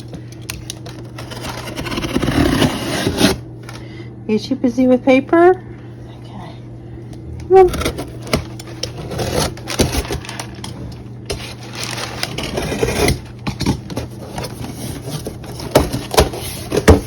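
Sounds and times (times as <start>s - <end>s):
cardboard box scraping and knocking: 1.2s - 3.4s, 11.3s - 17.0s
packing paper rustling: 7.9s - 17.0s.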